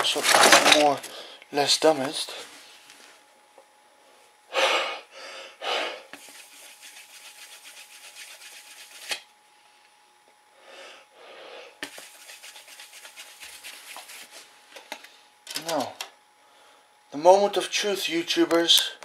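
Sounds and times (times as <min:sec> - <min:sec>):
rubbing of cd case: 0:06.2 - 0:09.2, 0:11.8 - 0:14.4.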